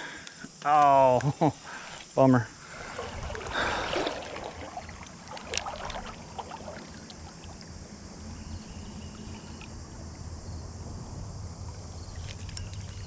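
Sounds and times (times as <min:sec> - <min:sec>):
river water running: 0:01.5 - 0:10.2.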